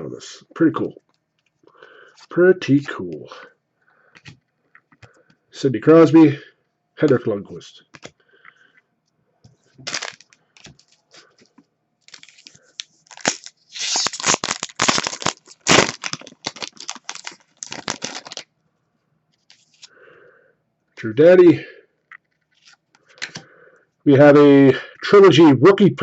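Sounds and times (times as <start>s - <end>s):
plastic wrapper tearing and crinkling: 9.8s - 11.3s, 12.0s - 18.5s.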